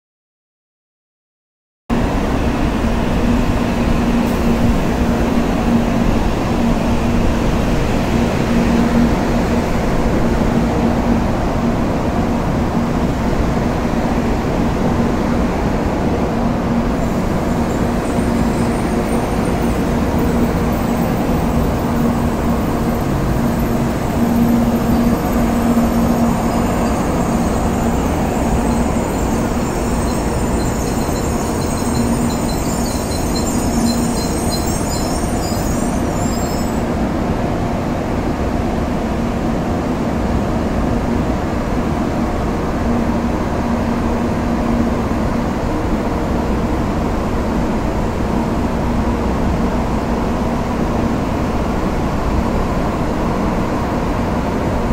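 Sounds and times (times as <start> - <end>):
train rumble: 1.9 - 54.9
high-pitched wheel squeal: 17.0 - 37.1.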